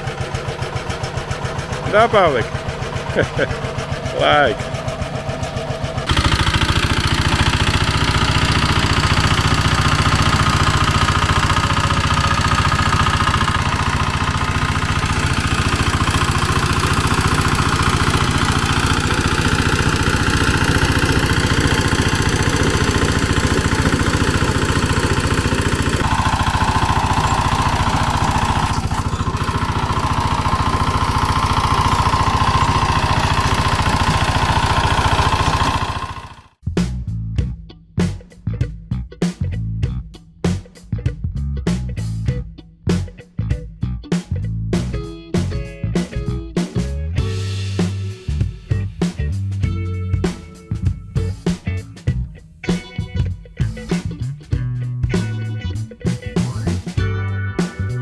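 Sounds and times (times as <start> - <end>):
diesel tractor engine running: 0.0 - 36.6, 47.2 - 52.3.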